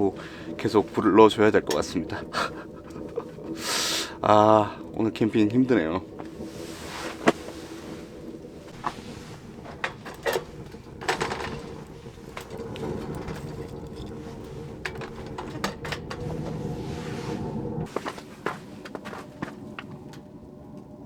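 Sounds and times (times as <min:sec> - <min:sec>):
steady low hum: 0:00.0 - 0:21.0
sharp clicks and knocks: 0:07.0 - 0:16.6.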